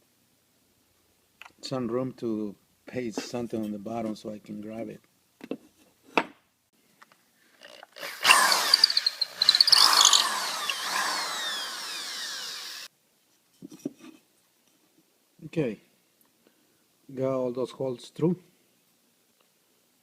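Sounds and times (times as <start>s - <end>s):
electric drill boring wood: 7.6s - 12.9s.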